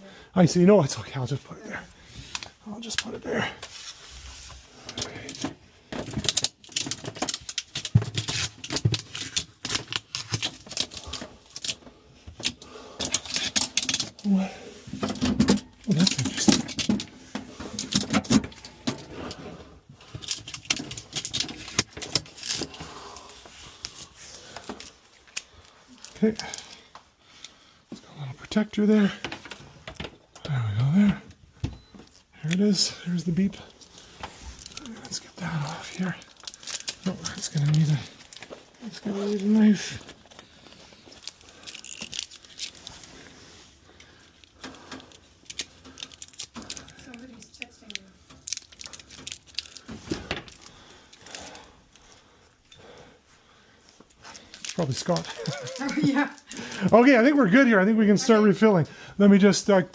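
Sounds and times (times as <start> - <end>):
packaging rattling and rustling: 4.8 - 14.3, 14.9 - 19.4, 20.0 - 26.8, 33.7 - 52.2, 54.0 - 57.0.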